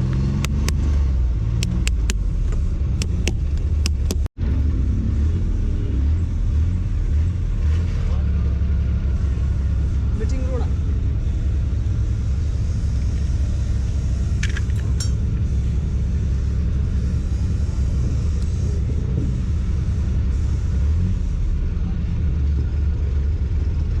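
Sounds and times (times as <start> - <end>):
steady low rumble: 0.0 - 24.0
sharp clicks: 1.6 - 2.2, 3.0 - 4.3.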